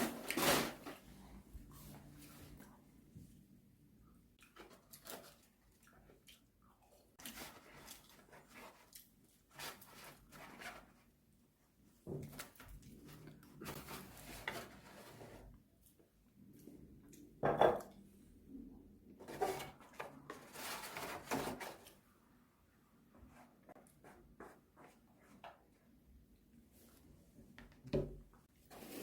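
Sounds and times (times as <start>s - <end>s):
chewing and lip-smacking: 4.4s - 7.2s.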